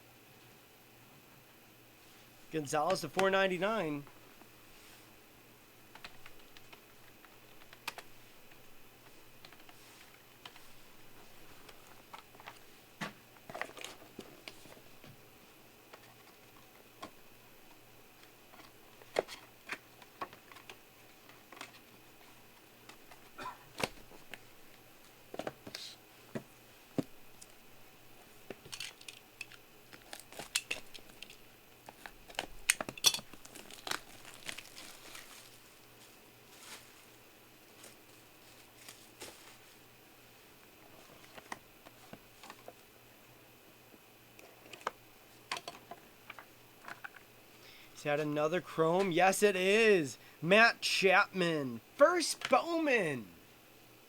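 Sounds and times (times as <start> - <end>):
faint steady hum: 0.0 - 54.0
card packaging crinkling: 29.9 - 39.6.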